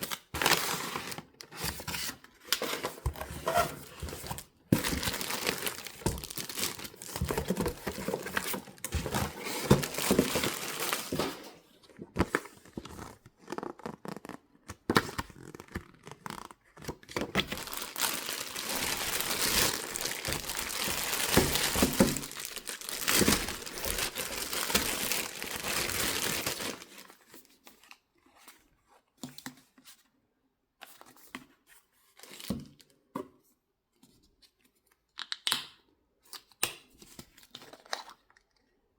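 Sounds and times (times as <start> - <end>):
wrapping crinkling and tearing: 0.0 - 1.6, 3.4 - 11.4, 12.6 - 28.0.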